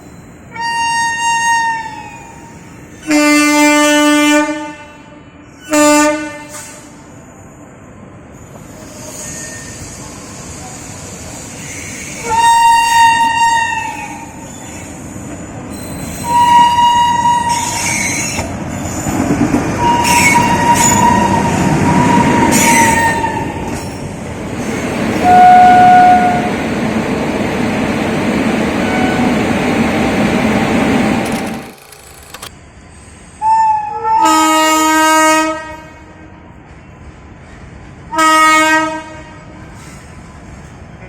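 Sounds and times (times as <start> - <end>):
running train rumble: 0.0 - 41.0
train horn blasts: 3.0 - 7.0, 12.2 - 14.1, 25.2 - 26.5, 28.8 - 29.4, 33.4 - 36.3, 38.1 - 39.6
brief high screeches: 8.6 - 12.2.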